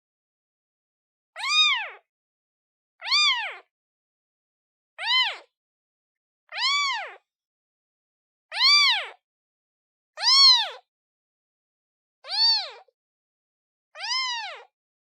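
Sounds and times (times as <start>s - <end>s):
kitten meowing: 1.4s - 2.0s, 3.0s - 3.7s, 5.0s - 5.5s, 6.5s - 7.2s, 8.5s - 9.2s, 10.2s - 10.8s, 12.3s - 12.9s, 14.0s - 14.7s.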